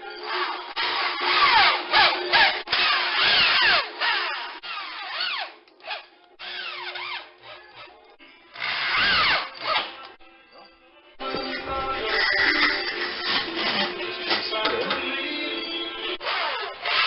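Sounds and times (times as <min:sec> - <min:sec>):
power drill driving screws: 0:00.3 - 0:07.9, 0:16.2 - 0:17.0
background music: 0:05.6 - 0:17.0.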